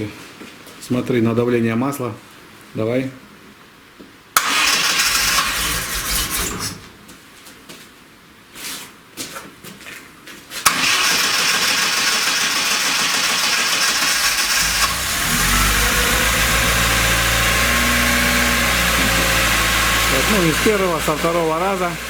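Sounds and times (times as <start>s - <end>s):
engine sputtering: 4.4s - 6.9s, 10.7s - 22.0s
car engine starting and running: 4.4s - 7.0s, 10.7s - 22.0s.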